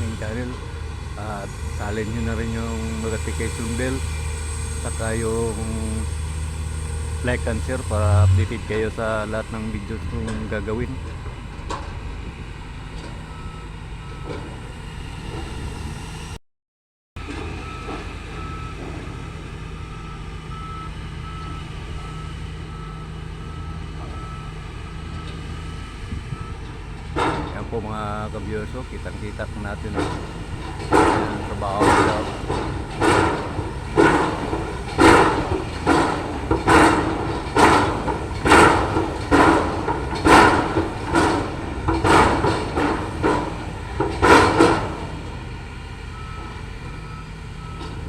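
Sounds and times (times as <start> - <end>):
clanking metal impacts: 0.0 - 12.0, 26.3 - 45.6
diesel engine drone: 0.0 - 16.4, 17.2 - 48.0
low machinery rumble: 0.0 - 16.4, 17.2 - 48.0
reversing alarm beeping: 1.2 - 10.9, 13.2 - 14.7, 17.4 - 26.8, 27.5 - 45.1, 46.1 - 48.0.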